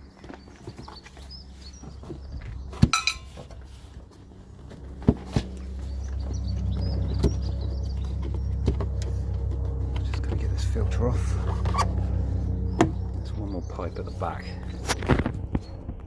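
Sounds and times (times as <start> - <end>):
low steady rumble: 1.2 - 16.0
metal parts clinking: 3.0 - 3.4.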